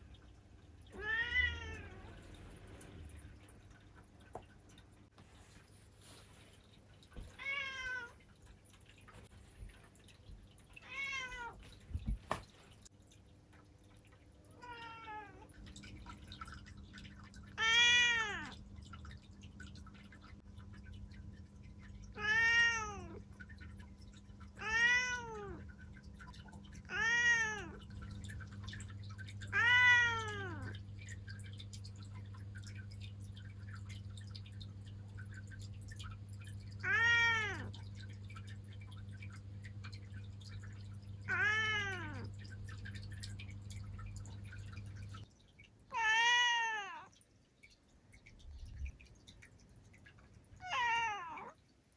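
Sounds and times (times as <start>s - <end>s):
cat meowing: 1.0s - 2.1s, 22.2s - 23.2s, 24.6s - 25.6s, 26.9s - 27.8s, 29.5s - 30.7s, 36.8s - 37.7s, 41.3s - 42.3s, 45.9s - 47.1s, 50.6s - 51.5s.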